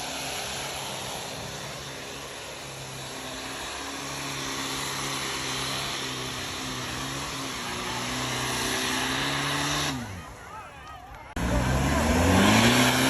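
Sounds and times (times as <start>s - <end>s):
continuous broad hiss: 0.0s - 9.9s
vehicle engine running: 0.0s - 13.0s.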